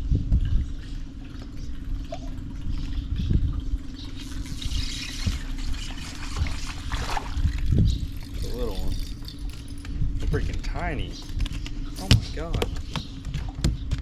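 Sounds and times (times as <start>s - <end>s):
steady low hum: 0.0s - 14.0s
water splashing against boat: 4.4s - 9.5s.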